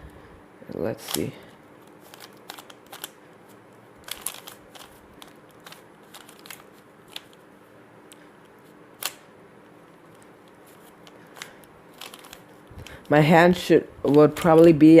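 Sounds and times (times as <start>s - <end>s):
plastic cube layers clicking: 2.0s - 3.2s, 4.0s - 7.4s, 10.1s - 12.5s.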